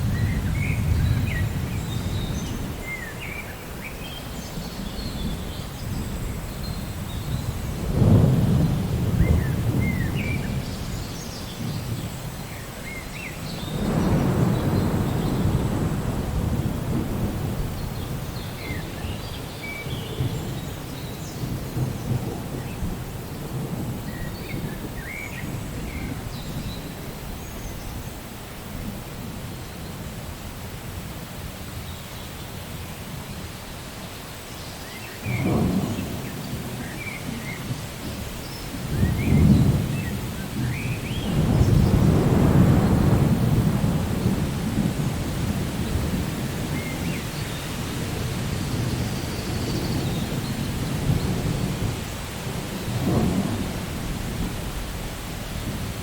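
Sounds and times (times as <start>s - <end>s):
thunder claps and rumble: 0.0s - 3.2s, 4.3s - 31.6s, 35.2s - 56.0s
steady rain: 0.0s - 56.0s.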